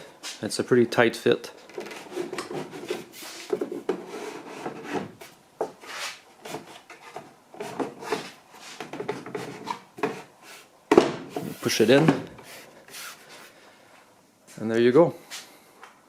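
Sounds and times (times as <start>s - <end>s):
plywood scraping on metal fence: 1.6s - 10.6s
sharp wooden knocks: 10.9s - 11.3s.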